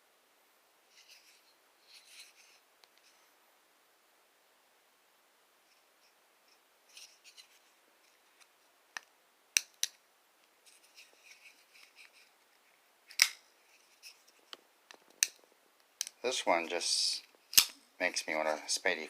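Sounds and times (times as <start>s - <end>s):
knife rubbing in hand: 0.9s - 2.6s.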